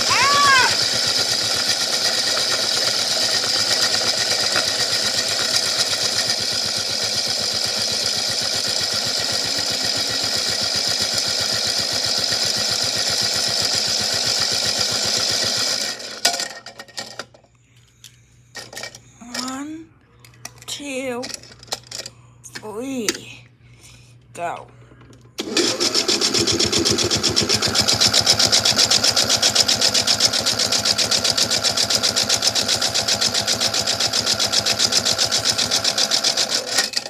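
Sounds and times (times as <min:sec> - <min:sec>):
toy motor running: 0:00.0 - 0:16.2, 0:25.4 - 0:37.0
toy cars rattling in drum: 0:00.0 - 0:17.4, 0:21.2 - 0:22.1, 0:25.4 - 0:37.0.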